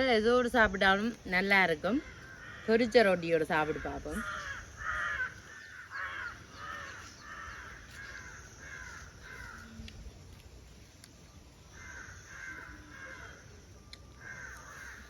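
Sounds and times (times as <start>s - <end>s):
crows cawing: 1.8s - 9.8s, 11.7s - 13.6s, 14.2s - 15.0s.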